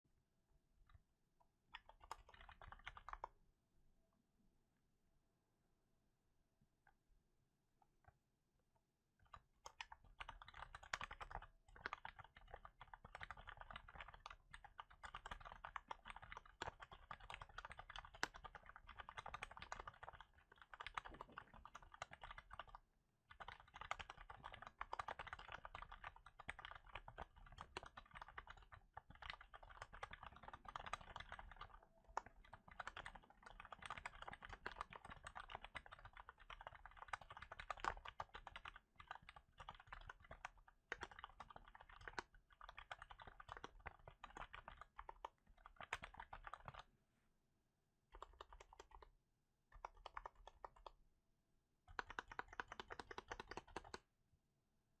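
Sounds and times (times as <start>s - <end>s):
mechanical keyboard typing: 1.8s - 3.3s, 9.2s - 46.9s, 48.1s - 49.0s, 49.7s - 50.9s, 51.9s - 54.0s.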